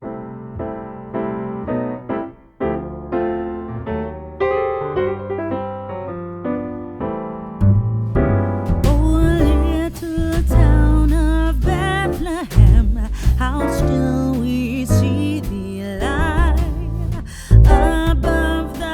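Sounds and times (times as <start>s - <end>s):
piano playing: 0.0s - 18.9s
bass and drums: 7.6s - 18.9s
person singing: 8.9s - 18.9s.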